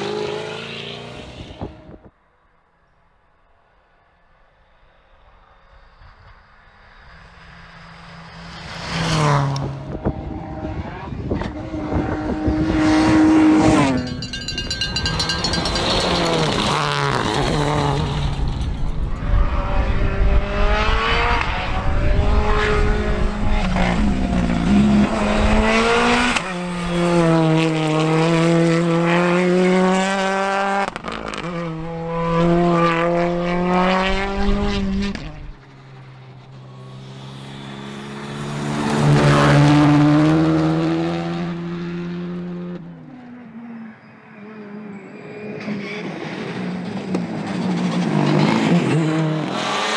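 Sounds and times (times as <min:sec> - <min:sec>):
rally car engines revving: 0:00.0 - 0:02.1, 0:05.6 - 0:49.9
car passing by: 0:05.1 - 0:43.2.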